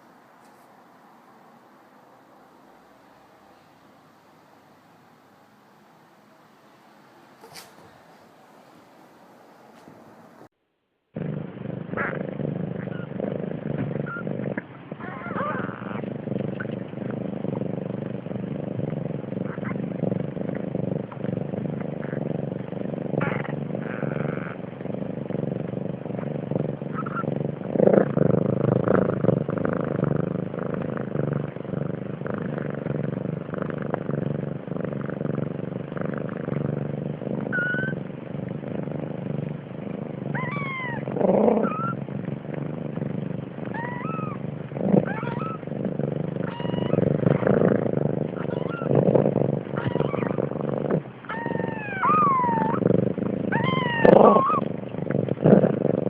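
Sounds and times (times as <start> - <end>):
cat purring: 0.0 - 10.5, 11.2 - 56.0
cat meowing: 40.4 - 41.0, 43.7 - 44.4, 46.5 - 47.0, 48.4 - 48.9, 49.8 - 50.4, 51.3 - 52.8, 53.5 - 54.7.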